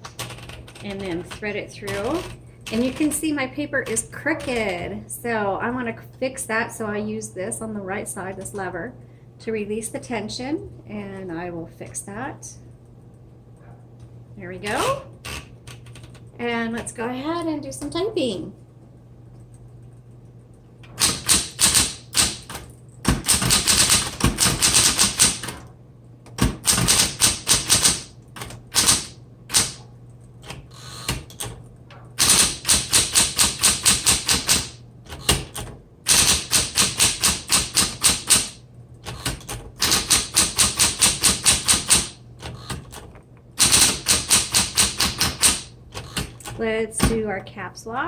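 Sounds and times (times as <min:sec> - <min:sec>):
electric typewriter typing: 0:00.0 - 0:05.0, 0:14.7 - 0:18.1, 0:20.8 - 0:47.2
steady low hum: 0:00.0 - 0:48.0.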